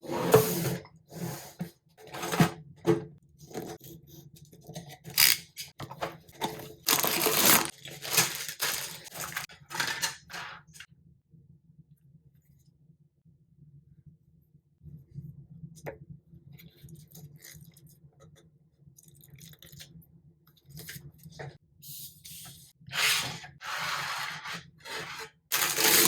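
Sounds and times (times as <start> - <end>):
packaging crinkling and tearing: 5.1 - 5.5, 6.7 - 10.4, 25.5 - 26.0.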